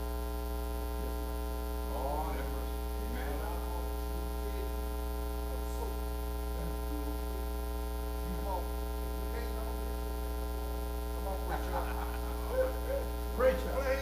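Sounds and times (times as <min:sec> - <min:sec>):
electrical mains hum: 0:00.0 - 0:14.0.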